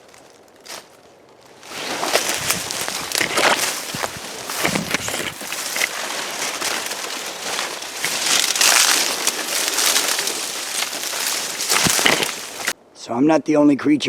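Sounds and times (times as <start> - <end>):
footsteps crunching dry leaves: 0.0 - 12.8
foliage rustling: 0.2 - 12.8
twigs snapping: 1.6 - 12.8.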